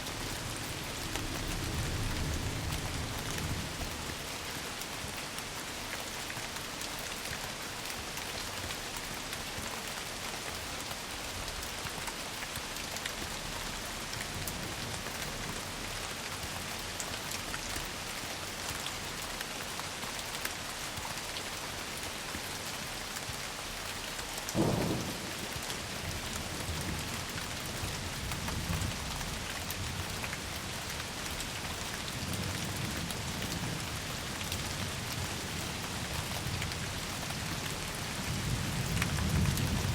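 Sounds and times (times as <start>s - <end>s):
heavy rain hiss: 0.0s - 39.9s
rolling thunder rumbles: 0.1s - 4.2s, 24.6s - 27.2s
thunderclap: 24.6s - 27.0s.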